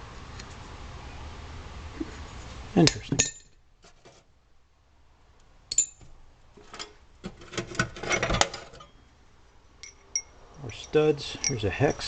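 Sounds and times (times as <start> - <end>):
metal hardware clinking and rattling: 2.8 - 4.2, 5.7 - 9.0, 9.8 - 12.0.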